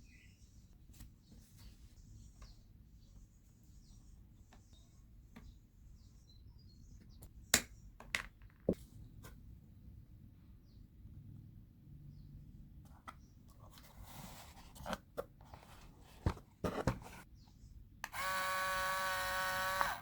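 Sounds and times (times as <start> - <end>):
cardboard scraping and rustling: 13.6 - 17.3.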